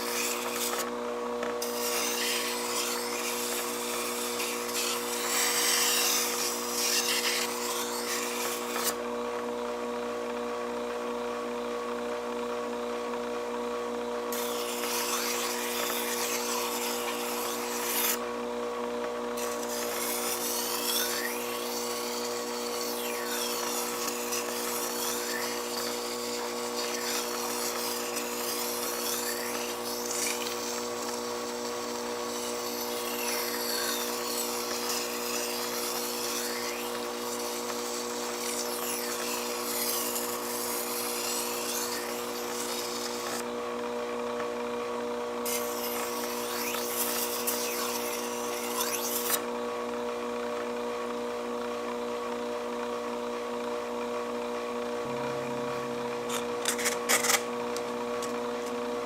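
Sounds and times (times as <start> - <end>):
blade grinding on whetstone: 0.0 - 0.9, 1.6 - 9.0, 14.3 - 18.3, 19.4 - 43.5, 45.4 - 49.5, 55.1 - 58.8
sharpener motor hum: 0.0 - 9.5, 14.2 - 43.8, 44.4 - 49.7, 53.8 - 59.0.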